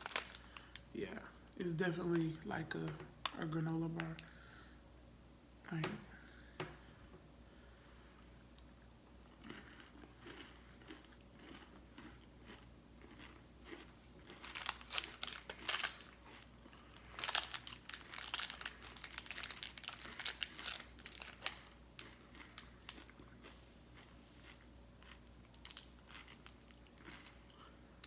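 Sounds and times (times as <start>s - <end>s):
wrapper crinkling: 0.0s - 0.7s, 13.7s - 16.2s, 16.8s - 21.8s
crunchy bar being chewed: 8.6s - 27.7s.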